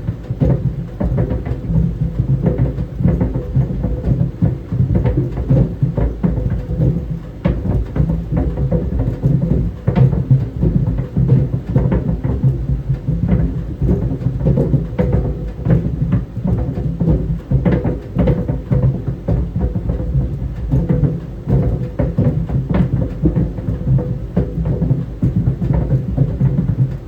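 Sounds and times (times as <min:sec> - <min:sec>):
balls thudding in clothes dryer: 0:00.0 - 0:27.0.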